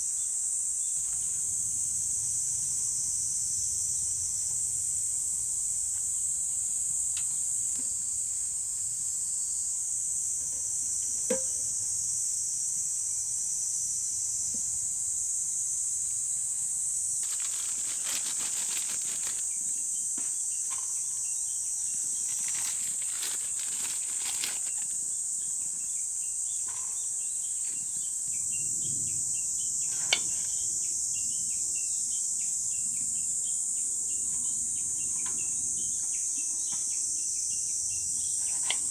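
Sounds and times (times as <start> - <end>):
insect chorus drone: 0.0 - 38.9
insect rasping: 17.1 - 20.0, 21.8 - 25.3.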